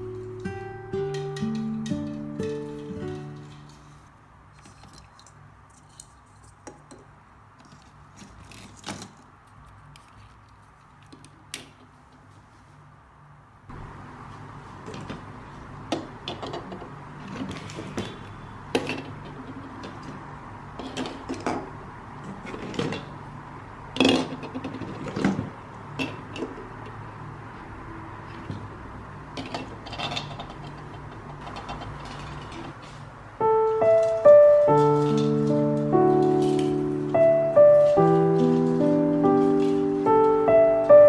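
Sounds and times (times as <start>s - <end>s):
decorations clinking and knocking: 0.0s - 9.2s.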